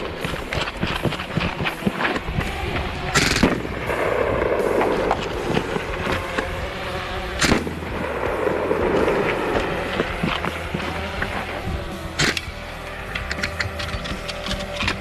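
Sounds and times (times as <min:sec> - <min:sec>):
air rifle shots: 0:00.0 - 0:15.0.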